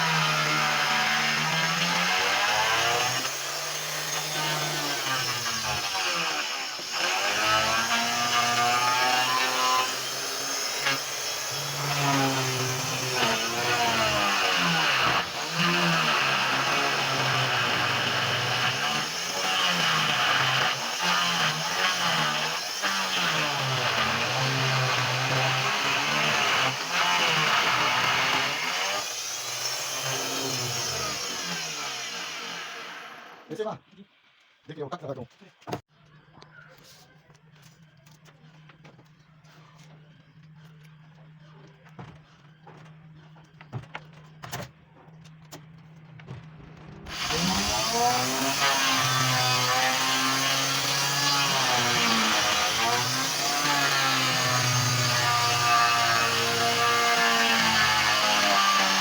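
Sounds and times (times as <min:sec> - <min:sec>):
power tool motor: 0:00.0 - 0:33.5, 0:47.1 - 0:59.0
rasping wood cutting noise: 0:00.0 - 0:33.5, 0:47.0 - 0:59.0.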